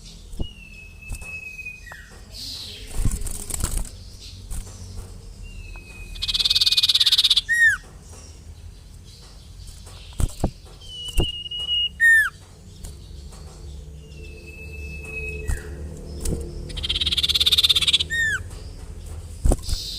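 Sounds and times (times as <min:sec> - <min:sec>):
songbird whistles and trills: 0:00.0 - 0:02.9, 0:05.4 - 0:07.8, 0:10.0 - 0:19.9.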